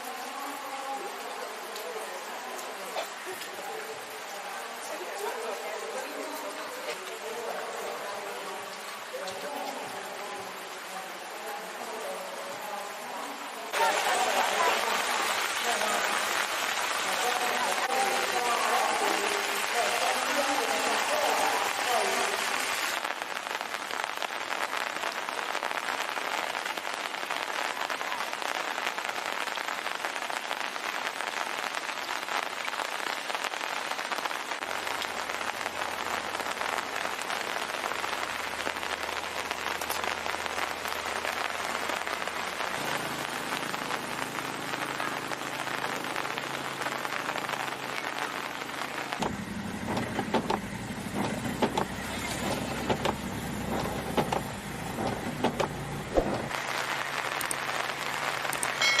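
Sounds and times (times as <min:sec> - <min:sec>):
heavy rain: 0:00.0 - 0:59.0
low engine hum: 0:49.2 - 0:56.5
knocks: 0:53.8 - 0:56.5.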